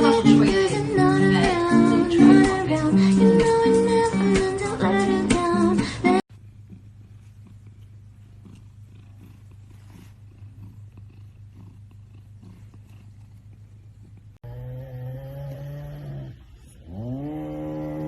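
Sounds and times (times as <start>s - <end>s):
animal low rumbling: 6.5s - 18.0s
animal low moan: 14.4s - 18.0s.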